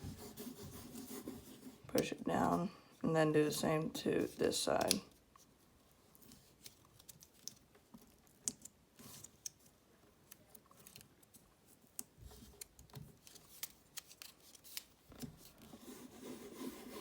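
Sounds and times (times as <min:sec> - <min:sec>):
paper crinkling: 0:06.0 - 0:16.0.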